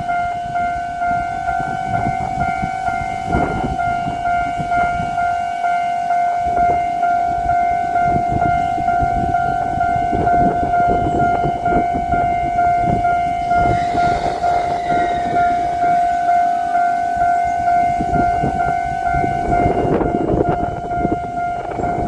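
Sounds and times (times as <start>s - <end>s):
electric train rumbling and knocking: 0.0s - 22.0s
level crossing warning bell: 0.0s - 22.0s
falling squeal: 13.3s - 17.7s.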